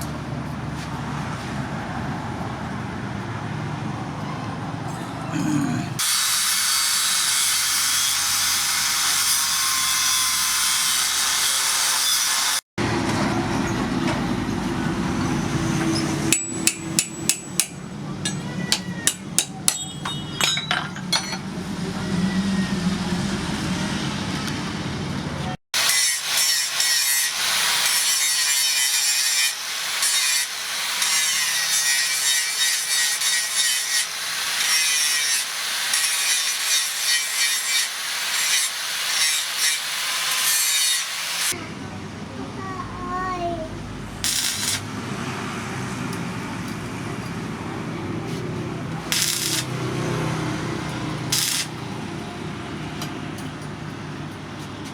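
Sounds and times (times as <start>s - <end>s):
grinding hiss on steel: 25.9s - 41.5s, 44.2s - 44.9s, 49.0s - 49.8s, 51.2s - 51.8s
file rasping on steel: 49.1s - 49.7s, 51.3s - 51.7s.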